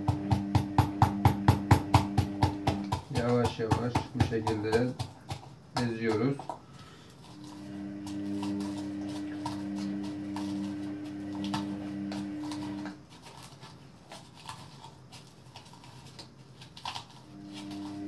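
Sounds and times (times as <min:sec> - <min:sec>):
pestle knocking and scraping mortar: 0:00.0 - 0:13.5
steady ringing hum: 0:05.9 - 0:12.8.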